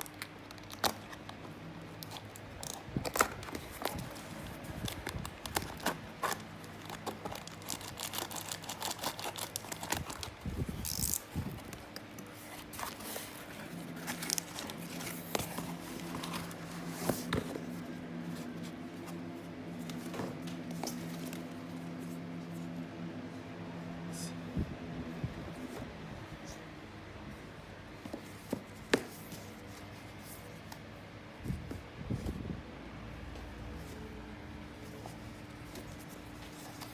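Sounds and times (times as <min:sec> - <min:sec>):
plastic and cardboard crinkling: 0:00.0 - 0:22.2
steady low hum: 0:00.0 - 0:36.9.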